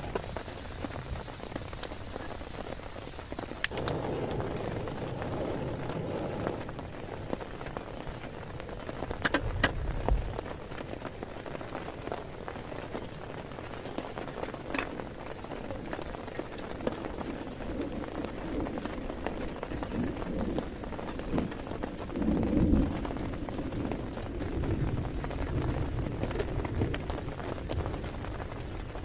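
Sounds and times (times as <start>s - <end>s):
rain falling: 0.0s - 29.0s
low rumble: 3.7s - 7.6s.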